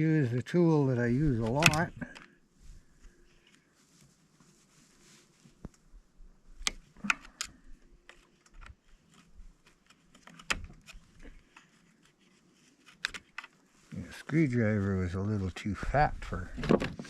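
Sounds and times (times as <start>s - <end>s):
hand tool clicking on plastic: 1.4s - 2.3s.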